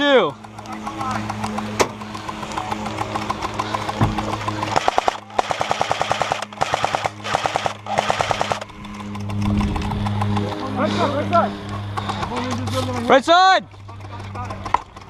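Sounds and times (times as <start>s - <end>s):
airsoft gun firing full-auto: 4.6s - 8.6s.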